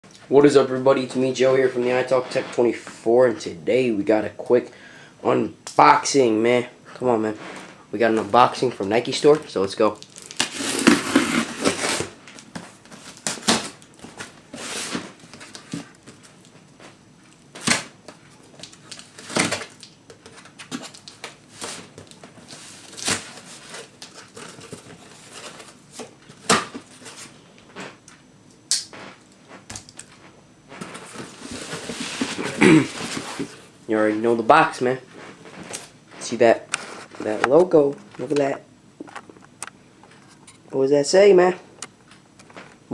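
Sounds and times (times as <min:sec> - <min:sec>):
packaging rustling and tearing: 0:07.4 - 0:28.0, 0:28.8 - 0:33.8.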